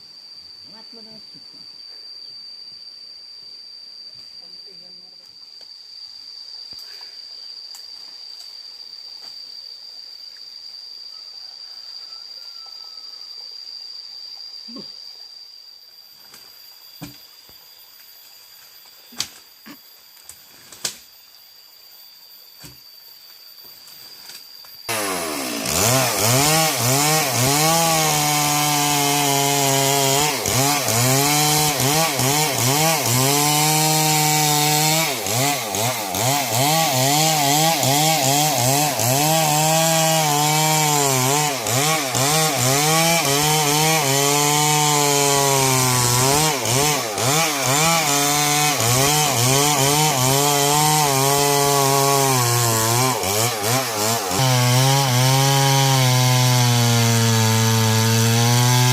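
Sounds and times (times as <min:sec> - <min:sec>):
chainsaw cutting wood: 0:24.2 - 0:58.9.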